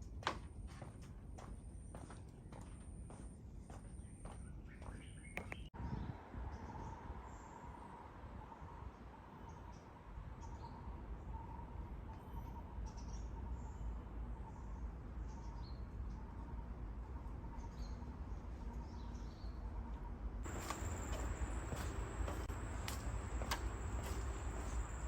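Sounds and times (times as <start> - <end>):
bird chirps: 20.5 - 25.0
insect calls: 20.5 - 25.0
steady low rumble: 20.5 - 25.0.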